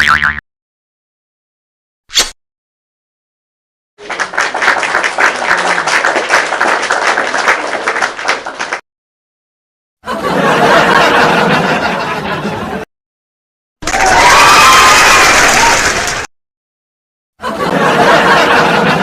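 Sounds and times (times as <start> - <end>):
crowd cheering: 4.0 - 8.8, 10.0 - 12.8, 13.8 - 16.3, 17.4 - 19.0
crowd clapping: 4.0 - 8.8, 13.8 - 16.3.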